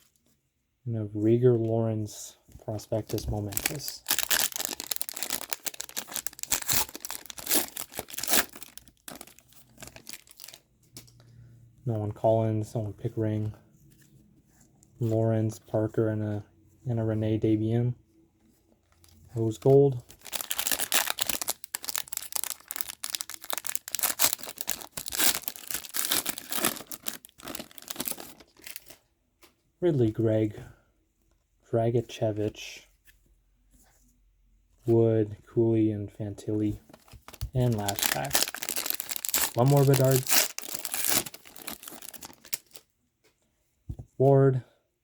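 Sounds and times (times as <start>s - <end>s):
foil wrapper crinkling and tearing: 3.0s - 10.6s, 19.4s - 29.0s, 37.0s - 42.8s.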